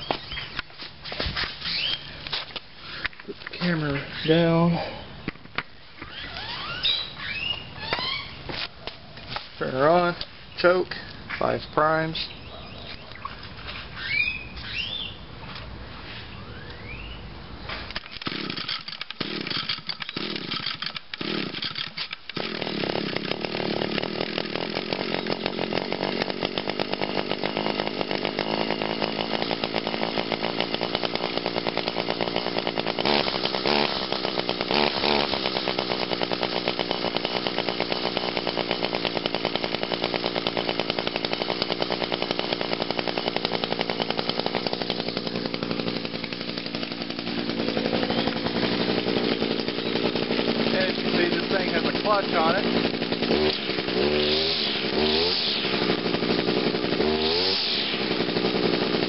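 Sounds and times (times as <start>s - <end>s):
recoil starter pulls: 17.9s - 59.0s
string trimmer engine running: 17.9s - 59.0s.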